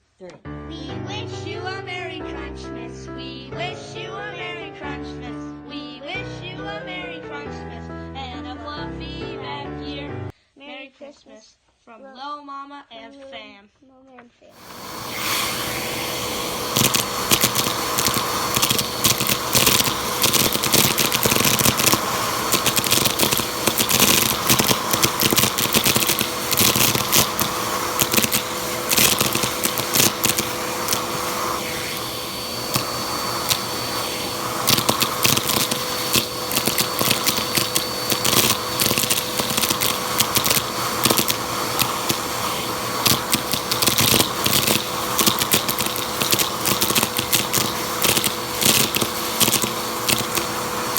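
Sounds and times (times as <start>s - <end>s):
vacuum cleaner motor whine: 14.6s - 50.9s.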